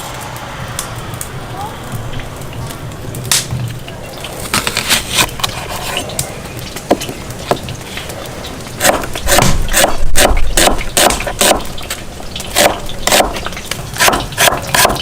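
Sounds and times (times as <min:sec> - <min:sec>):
sharp clicks and knocks: 0:03.2 - 0:08.2.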